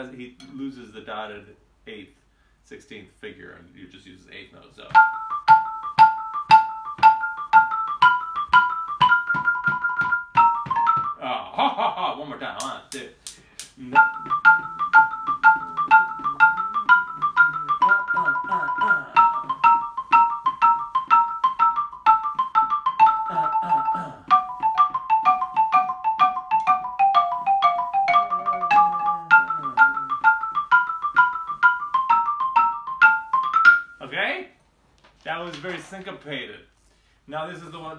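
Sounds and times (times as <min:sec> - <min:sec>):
xylophone played with mallets: 0:04.9 - 0:11.2, 0:13.8 - 0:34.2.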